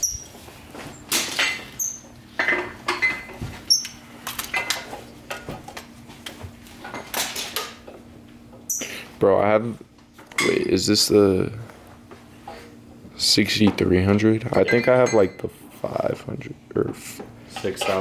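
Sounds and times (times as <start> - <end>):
short high squeaks: 0.0 - 0.4, 1.8 - 2.1.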